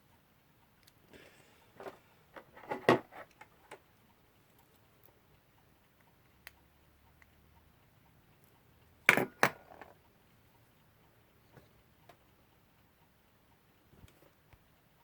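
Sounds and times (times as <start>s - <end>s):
light clicks and scrapes of metal parts: 0.8s - 5.2s.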